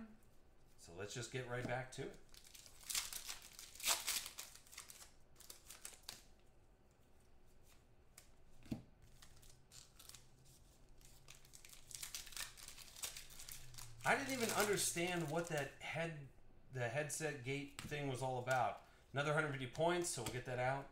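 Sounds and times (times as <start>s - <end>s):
cards being handled: 1.5s - 15.7s
card pack wrappers crinkling: 2.2s - 6.3s, 9.1s - 15.8s.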